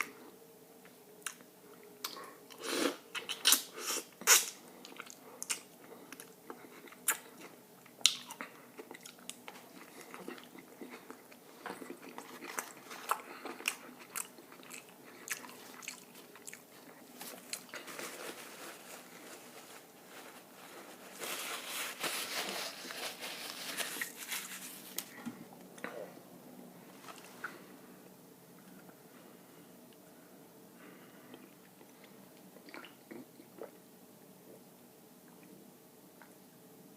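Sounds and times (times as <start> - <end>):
person chewing food: 1.2 - 18.1, 31.3 - 33.8.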